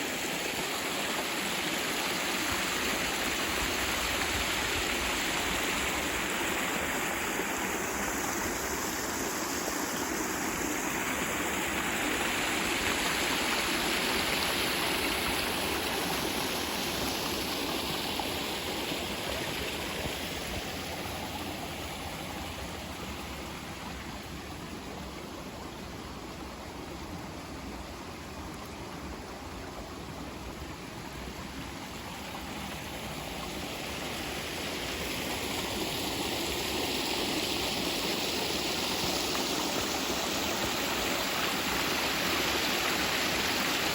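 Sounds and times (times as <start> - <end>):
creek water flowing: 0.0 - 43.9.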